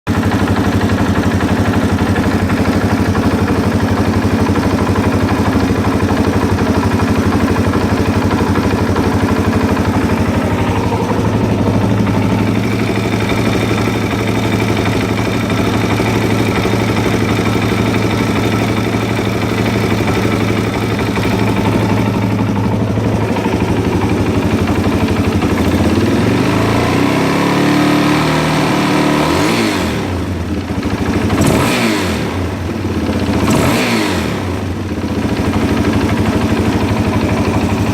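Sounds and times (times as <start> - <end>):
motorcycle engine idling with knock: 0.1 - 37.9.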